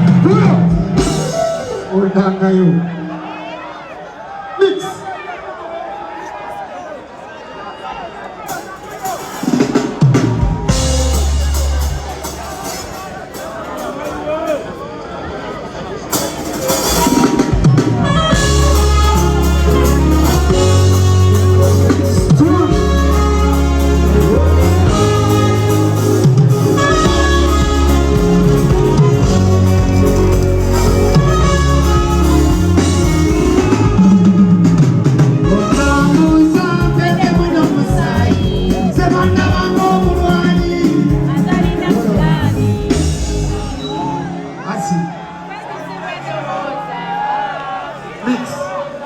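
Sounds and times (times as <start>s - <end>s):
loud music over stage speakers: 0.0s - 3.3s, 8.5s - 15.0s, 16.0s - 48.7s
deep sustained bass line: 18.2s - 34.8s.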